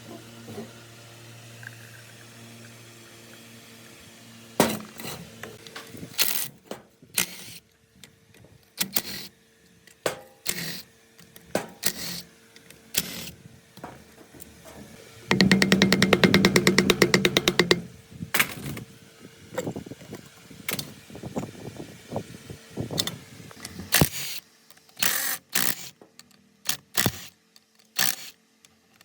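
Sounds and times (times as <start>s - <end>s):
metal knocks and scrapes: 13.8s - 17.9s
machine rattling fast: 15.3s - 17.9s.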